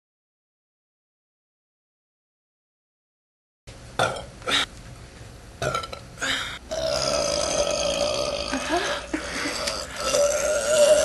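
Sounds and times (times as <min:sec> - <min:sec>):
woman burping: 0:05.6 - 0:11.0.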